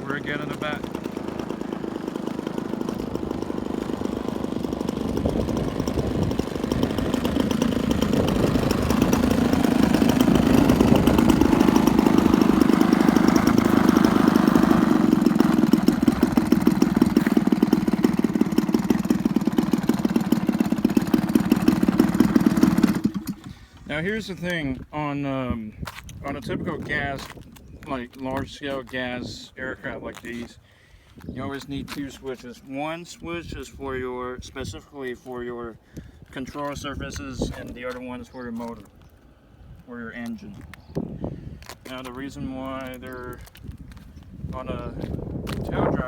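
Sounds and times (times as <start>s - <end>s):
model plane two-stroke engine: 0.0s - 23.9s, 41.6s - 46.0s.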